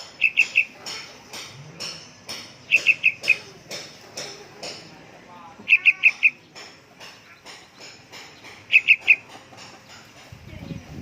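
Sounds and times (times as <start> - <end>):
bird warbling: 0.0 - 1.2, 1.8 - 3.7, 5.6 - 6.5, 8.6 - 9.3
bird chirping: 0.0 - 4.3, 5.6 - 10.8.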